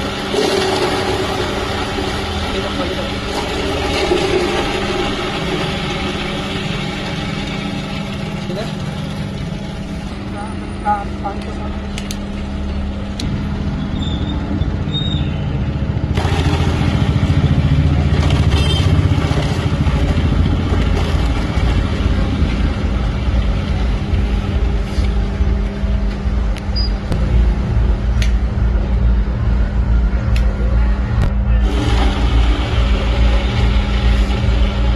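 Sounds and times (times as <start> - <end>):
loud rough grinding noise: 0.0 - 11.4, 12.7 - 26.5, 31.6 - 34.9
chopping machine humming: 0.0 - 34.9.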